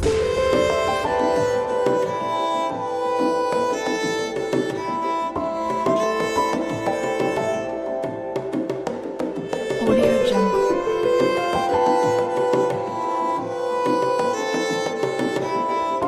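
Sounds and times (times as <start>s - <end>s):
melodic music with strings and percussion: 0.0s - 16.0s
electronic music track: 9.6s - 14.4s.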